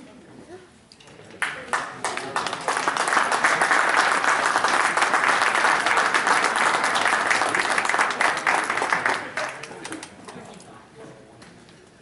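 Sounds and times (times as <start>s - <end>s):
audience applauding: 1.4s - 10.2s.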